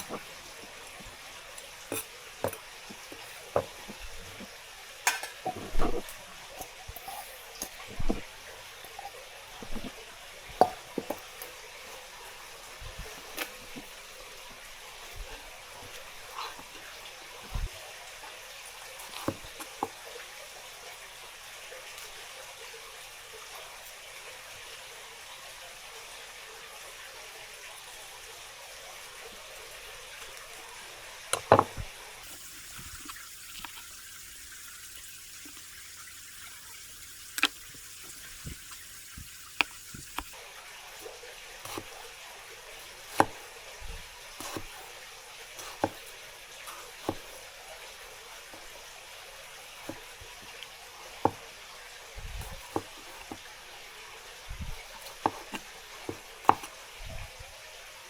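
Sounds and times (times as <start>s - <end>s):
water running into sink: 0.0s - 23.7s, 27.5s - 58.0s.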